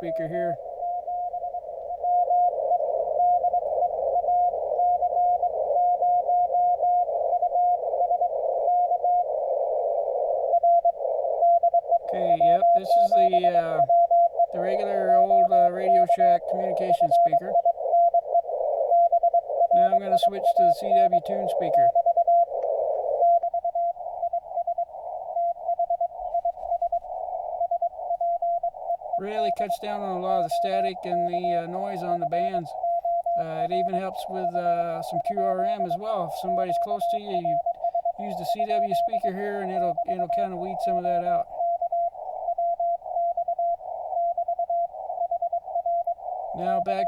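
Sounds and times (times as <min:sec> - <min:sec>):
morse code tone: 0:00.0 - 0:02.5, 0:11.5 - 0:18.3, 0:19.0 - 0:22.5, 0:23.3 - 0:47.0
radio static: 0:00.0 - 0:03.8, 0:12.0 - 0:27.3, 0:28.0 - 0:42.5, 0:46.2 - 0:47.0.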